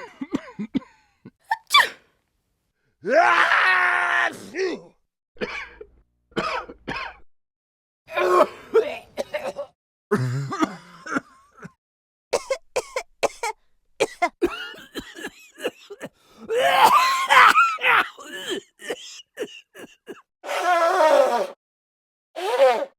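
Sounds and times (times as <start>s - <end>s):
person coughing: 12.4s - 20.3s.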